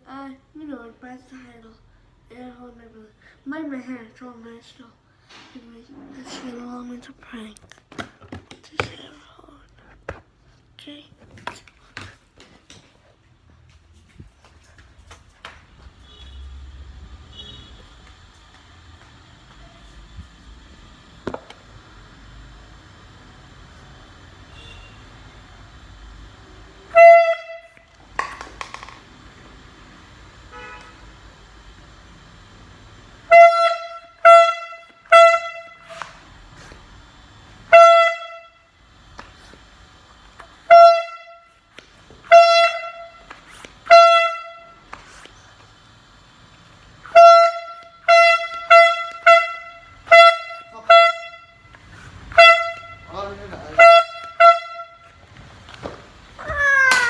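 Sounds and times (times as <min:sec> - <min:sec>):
air horn blasts: 0:16.0 - 0:18.4, 0:24.4 - 0:28.0, 0:30.3 - 0:31.7, 0:33.2 - 0:36.8, 0:37.6 - 0:39.6, 0:40.4 - 0:45.5, 0:46.9 - 0:57.0.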